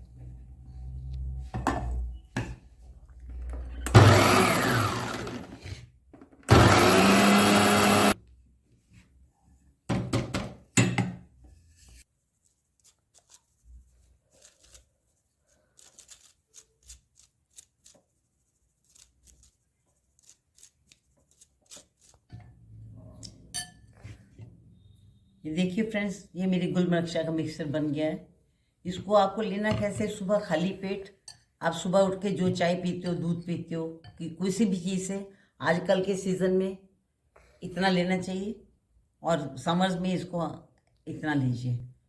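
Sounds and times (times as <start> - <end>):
electric mixer grinder running: 3.9 - 5.8, 6.5 - 8.2.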